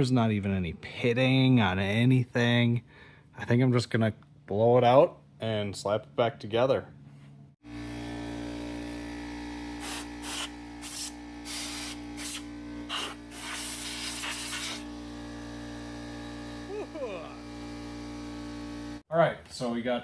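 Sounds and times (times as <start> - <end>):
motor humming: 7.6 - 19.0
compressed air blasts: 9.8 - 14.9.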